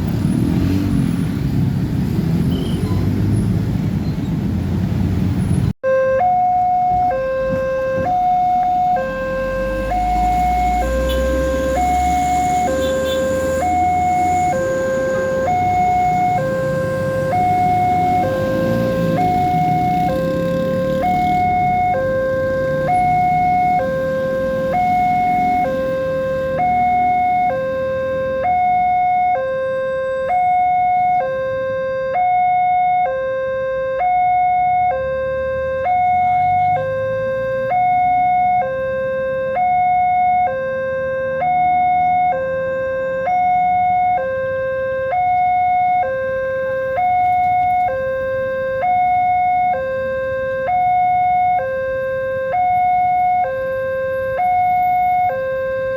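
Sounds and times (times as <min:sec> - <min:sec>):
two-tone crossing alarm: 0:05.8 - 0:55.9.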